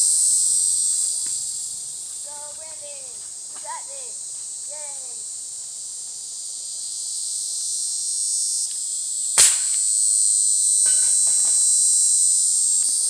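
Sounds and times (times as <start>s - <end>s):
high-pitched insect chorus: 0.0s - 13.0s
pellet rifle crack: 9.4s - 9.9s.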